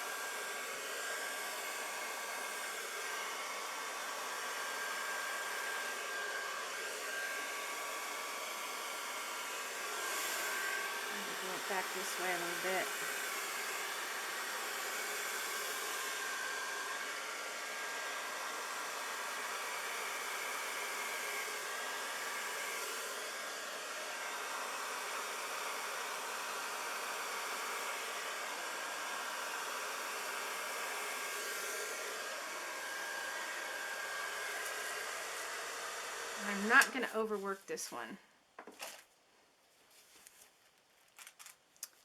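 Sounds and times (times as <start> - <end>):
hair dryer running: 0.0 - 38.1.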